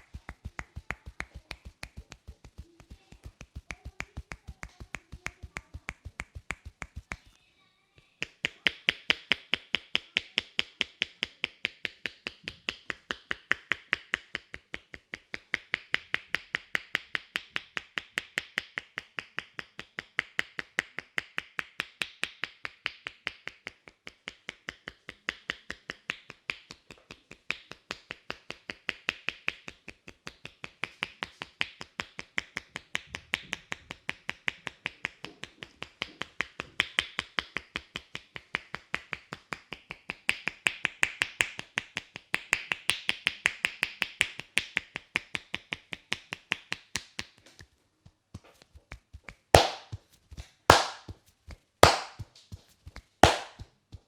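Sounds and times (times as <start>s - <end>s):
hands tapping on head: 0.0s - 7.4s, 8.2s - 47.4s, 48.4s - 50.1s, 50.7s - 54.0s
heavy strikes on head: 49.6s - 50.0s, 50.7s - 51.1s, 51.8s - 52.2s, 53.2s - 53.6s.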